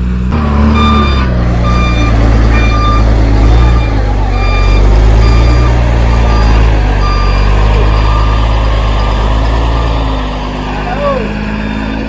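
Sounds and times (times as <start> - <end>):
heavy truck engine running: 0.0 - 12.0
reversing alarm beeping: 0.7 - 10.1.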